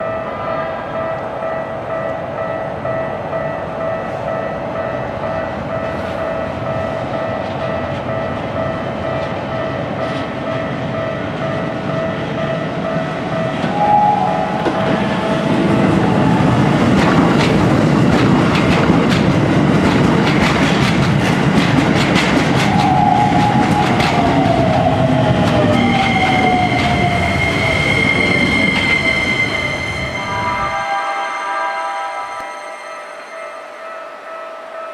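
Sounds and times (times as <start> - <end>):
level-crossing warning bell: 0.0 - 19.9, 22.0 - 34.9
electric train passing: 0.0 - 34.9
wheel clatter over rail joints: 16.9 - 24.5
tone falling in pitch: 28.6 - 34.1.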